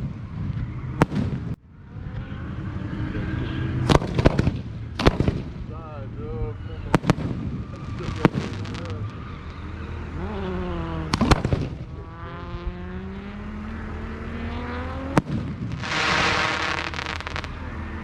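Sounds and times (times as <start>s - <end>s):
rising firework whine: 0.0s - 18.0s
firework bangs: 1.0s - 1.6s, 3.8s - 5.8s, 6.9s - 9.5s, 11.1s - 12.1s, 15.1s - 17.7s
firework crackling hiss: 7.0s - 9.6s, 15.3s - 17.7s.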